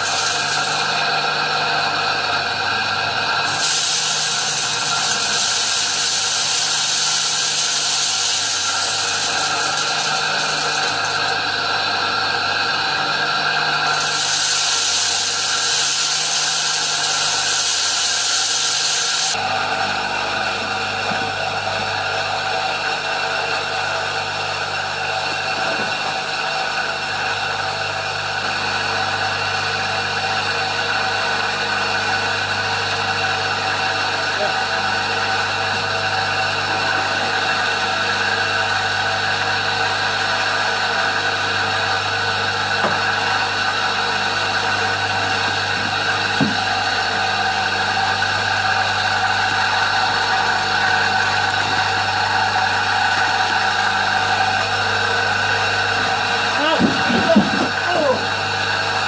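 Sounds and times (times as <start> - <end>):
grinder motor humming: 0.0 - 59.0
brief knock: 46.4 - 46.6.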